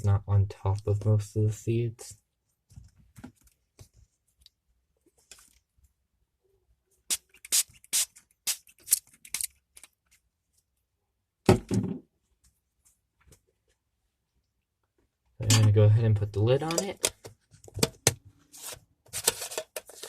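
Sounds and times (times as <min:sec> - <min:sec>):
plastic items clicking and tapping: 0:16.6 - 0:18.2.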